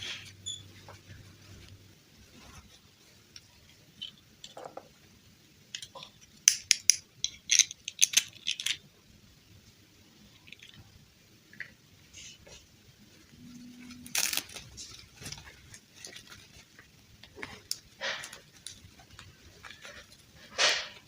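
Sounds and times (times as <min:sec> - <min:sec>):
hands handling small objects: 0:05.7 - 0:08.9, 0:13.8 - 0:21.0.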